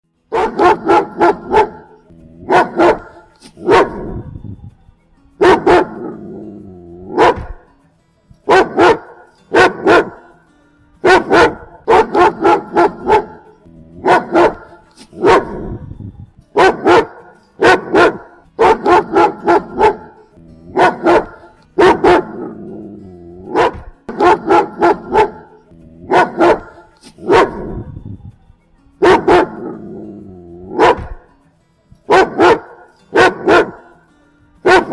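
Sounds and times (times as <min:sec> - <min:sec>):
dog barking: 0:00.3 - 0:04.3, 0:05.4 - 0:06.2, 0:07.1 - 0:07.7, 0:08.4 - 0:10.3, 0:11.0 - 0:15.9, 0:16.6 - 0:22.6, 0:23.5 - 0:28.0, 0:29.0 - 0:29.9, 0:30.7 - 0:31.3, 0:32.1 - 0:34.0, 0:34.6 - 0:34.9.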